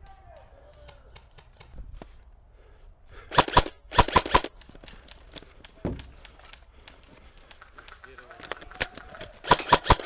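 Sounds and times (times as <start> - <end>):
airsoft gun rapid shots: 3.3 - 4.5, 9.4 - 10.0.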